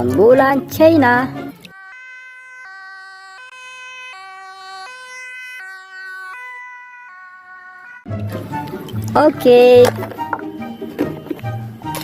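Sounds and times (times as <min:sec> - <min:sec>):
toy siren two-tone wail: 0:01.6 - 0:08.1.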